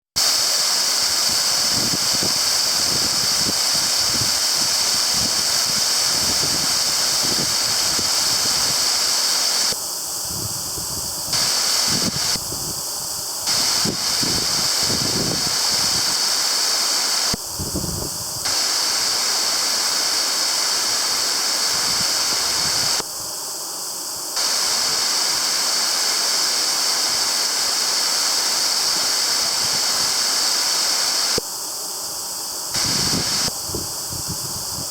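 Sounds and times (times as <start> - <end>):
waterfall rushing: 0.2 - 9.7, 11.4 - 12.4, 13.5 - 17.3, 18.5 - 23.0, 24.4 - 31.4, 32.8 - 33.5.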